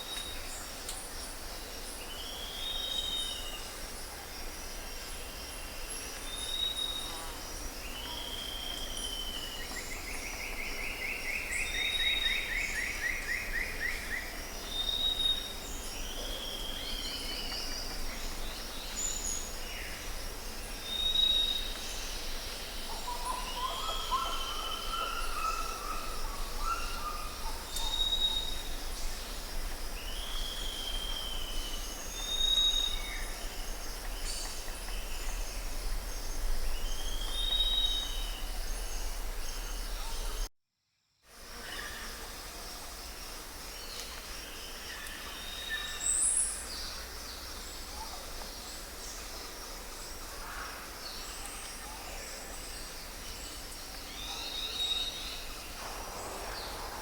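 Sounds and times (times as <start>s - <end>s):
high-pitched hiss: 41.3s - 57.0s.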